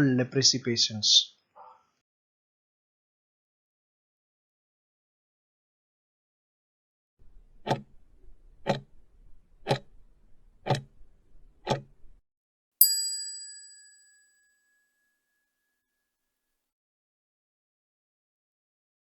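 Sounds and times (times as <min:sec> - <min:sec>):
clock ticks: 0:07.6 - 0:07.9, 0:08.6 - 0:08.9, 0:09.6 - 0:09.9, 0:10.6 - 0:10.9, 0:11.7 - 0:11.9
bell ding: 0:12.8 - 0:15.5.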